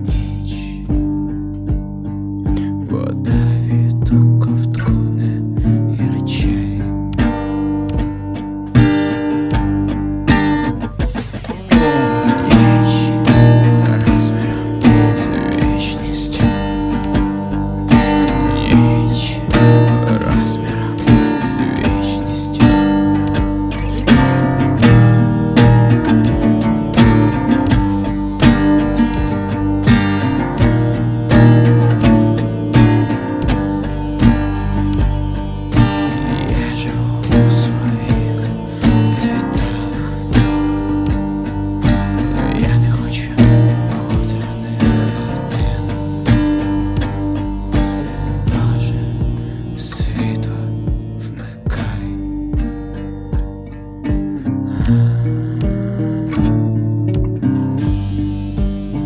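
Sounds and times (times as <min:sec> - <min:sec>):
acoustic guitar strumming chords: 0:00.0 - 0:59.0
rock band instrumental: 0:56.5 - 0:59.0.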